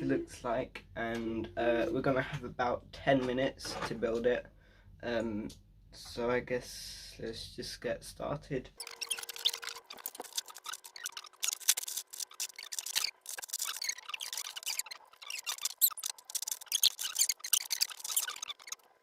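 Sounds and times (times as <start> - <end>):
plastic bricks clicking and rattling: 8.9 - 18.8.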